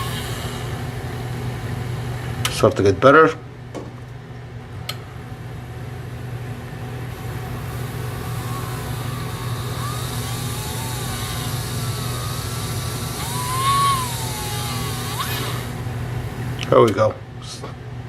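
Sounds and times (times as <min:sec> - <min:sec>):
sharpening wheel motor hum: 0:00.0 - 0:00.8, 0:07.0 - 0:16.0.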